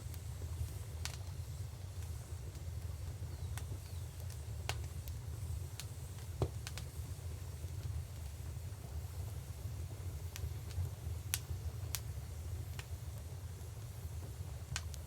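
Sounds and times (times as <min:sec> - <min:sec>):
wood fire crackling: 0:00.0 - 0:15.0.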